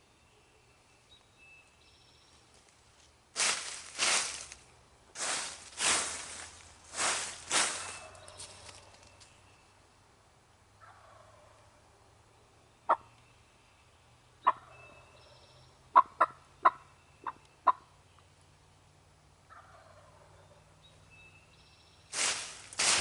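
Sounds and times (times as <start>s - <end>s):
loud rustle: 3.4s - 4.6s, 5.2s - 9.1s, 22.1s - 23.0s
turkey clucks: 10.8s - 11.6s, 14.4s - 15.0s, 15.9s - 17.9s, 19.5s - 20.5s
turkey calls: 10.8s - 11.7s, 12.9s - 13.2s, 14.4s - 17.9s, 19.5s - 20.6s.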